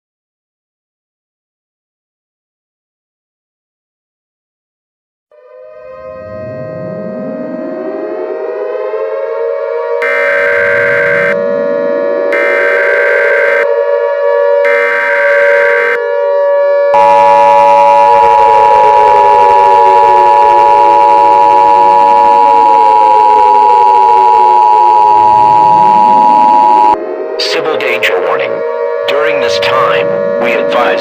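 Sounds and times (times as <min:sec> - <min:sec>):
siren wailing: 0:05.4 - 0:31.0
two-tone attention signal: 0:10.0 - 0:11.5, 0:12.4 - 0:13.6, 0:17.0 - 0:27.0.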